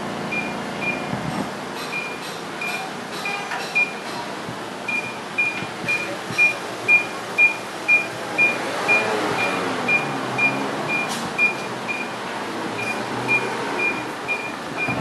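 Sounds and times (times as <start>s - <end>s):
steady background noise: 0.0s - 15.0s
high electronic beep: 4.9s - 12.2s, 12.8s - 15.0s.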